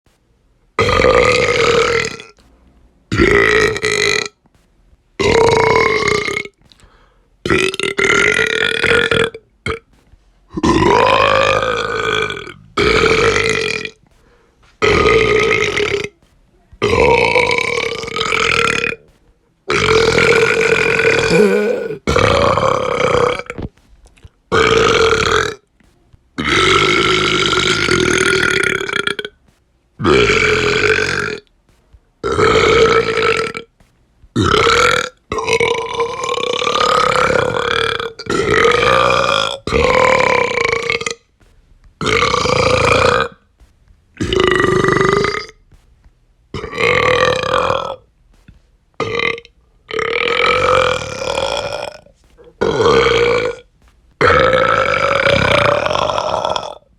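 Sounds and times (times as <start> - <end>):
person belching: 0.8 - 2.4, 3.1 - 4.4, 5.2 - 6.6, 7.4 - 9.9, 10.5 - 14.0, 14.8 - 16.2, 16.8 - 19.1, 19.7 - 23.7, 24.5 - 25.6, 26.4 - 29.3, 30.0 - 31.5, 32.2 - 33.7, 34.4 - 41.2, 42.0 - 43.4, 44.2 - 45.6, 46.6 - 48.0, 49.0 - 56.9.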